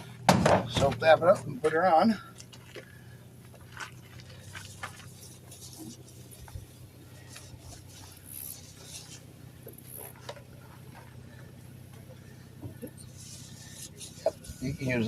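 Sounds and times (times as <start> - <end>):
steady low hum: 0.0 - 15.0
brush scratching on tire: 4.0 - 11.1, 12.9 - 15.0.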